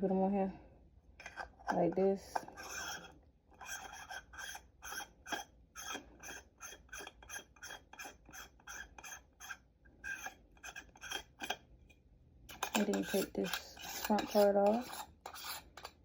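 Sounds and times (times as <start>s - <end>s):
hard parts scraping and rubbing: 1.2s - 16.0s.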